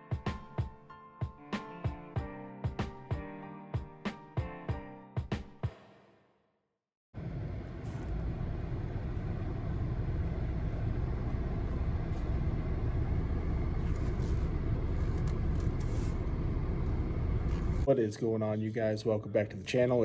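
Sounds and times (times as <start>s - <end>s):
motor vehicle rumble: 7.2s - 17.9s.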